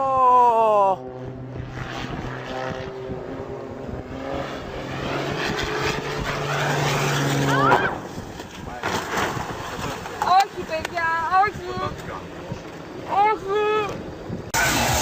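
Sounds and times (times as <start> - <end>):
aircraft engine tone falling: 0.0 - 8.6
engine drone: 0.0 - 15.0
rushing noise: 14.5 - 15.0.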